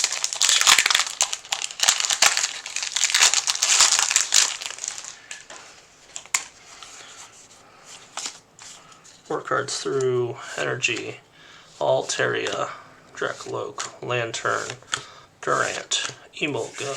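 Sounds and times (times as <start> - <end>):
foil wrapper crinkling and tearing: 0.0 - 7.1.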